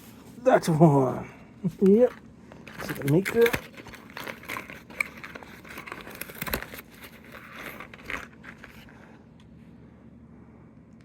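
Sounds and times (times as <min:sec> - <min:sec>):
plastic packaging crinkling: 0:01.8 - 0:09.1.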